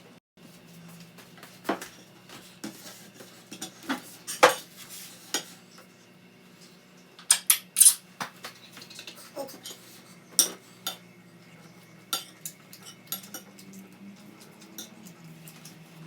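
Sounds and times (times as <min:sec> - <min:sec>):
cutlery and dishes clinking: 0:10.4 - 0:11.0, 0:12.2 - 0:13.8.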